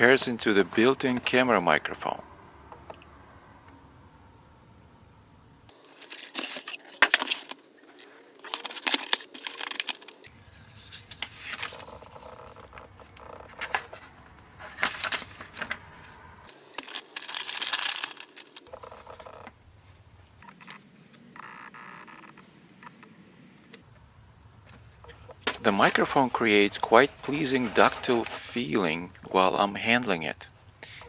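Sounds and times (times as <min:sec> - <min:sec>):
packaging crinkling and tearing: 0:05.7 - 0:12.6, 0:13.3 - 0:18.7.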